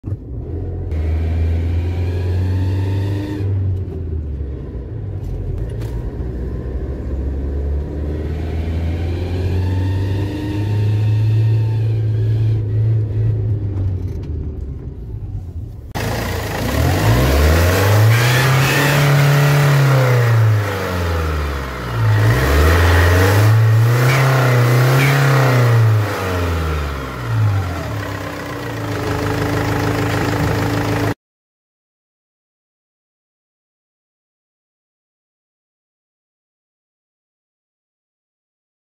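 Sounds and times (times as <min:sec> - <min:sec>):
car engine idling and revving: 0:00.0 - 0:31.2.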